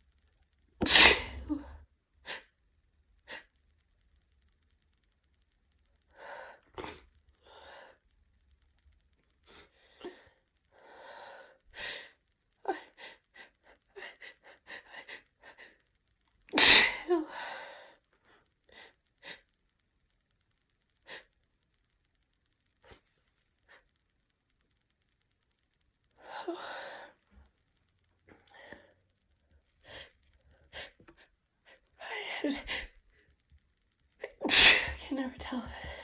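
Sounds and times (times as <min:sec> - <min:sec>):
woman sneezing: 0:00.8 - 0:01.8, 0:16.5 - 0:17.3, 0:34.2 - 0:36.0
woman breathing: 0:06.1 - 0:08.1, 0:09.5 - 0:15.8, 0:26.2 - 0:27.2, 0:28.3 - 0:29.0.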